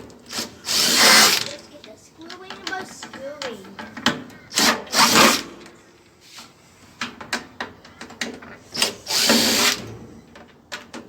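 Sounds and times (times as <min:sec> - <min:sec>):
power drill-driver bursts: 0:00.3 - 0:01.6, 0:04.5 - 0:05.6, 0:08.7 - 0:09.8.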